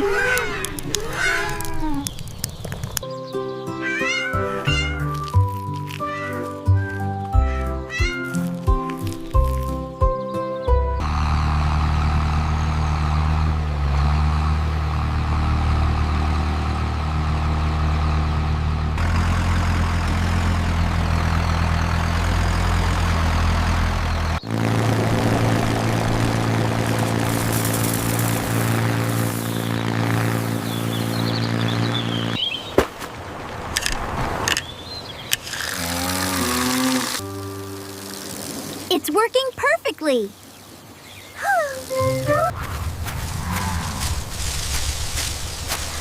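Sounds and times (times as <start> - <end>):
tractor engine running: 0.0 - 32.4, 41.8 - 46.0.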